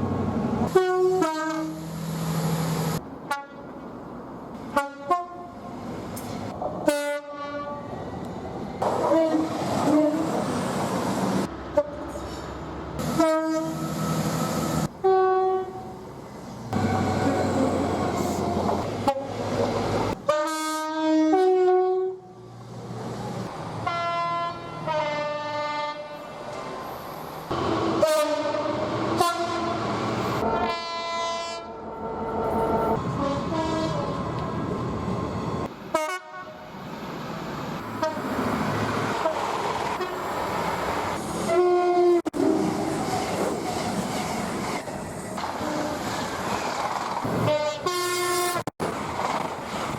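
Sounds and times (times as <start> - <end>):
train running noise: 0.0 - 20.8, 22.4 - 49.9
two-tone train horn blasts: 0.7 - 1.9, 3.3 - 3.6, 4.7 - 5.6, 6.8 - 7.9, 9.1 - 10.2, 13.0 - 14.0, 14.9 - 15.9, 20.2 - 22.3, 23.8 - 26.3, 28.0 - 29.8, 30.4 - 32.0, 33.2 - 34.2, 35.9 - 36.7, 38.0 - 38.3, 41.5 - 42.7, 47.4 - 48.7.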